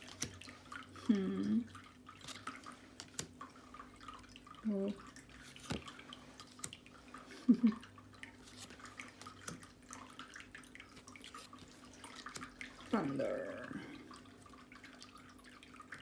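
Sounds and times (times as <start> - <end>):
cards being flipped: 0.0 - 0.4, 2.2 - 3.3, 5.4 - 6.0, 8.4 - 9.7, 11.0 - 12.8
person humming: 1.0 - 1.7.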